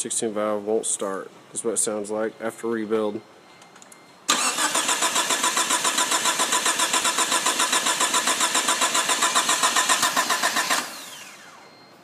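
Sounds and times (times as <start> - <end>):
starter motor cranking engine: 4.3 - 11.6.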